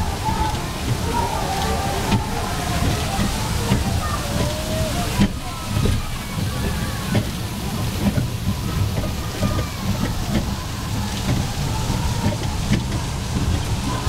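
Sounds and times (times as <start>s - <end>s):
ride-on train rumbling on track: 0.0s - 14.0s.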